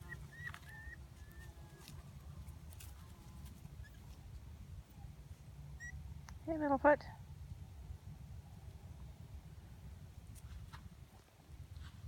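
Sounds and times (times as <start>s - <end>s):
puppies whining: 0.0s - 2.2s.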